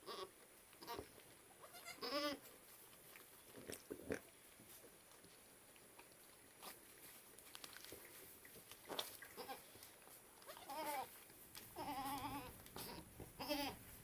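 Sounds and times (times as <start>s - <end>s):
goats bleating: 1.6s - 2.4s.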